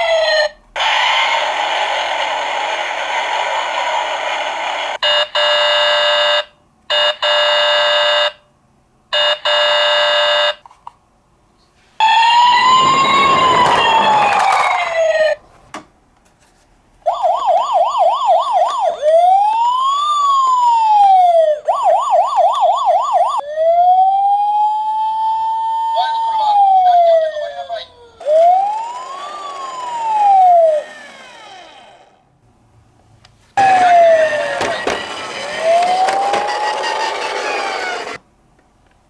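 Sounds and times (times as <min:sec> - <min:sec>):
police siren yelp and wail: 0:00.0 - 0:05.0, 0:12.0 - 0:15.4, 0:17.0 - 0:32.2, 0:33.6 - 0:38.2.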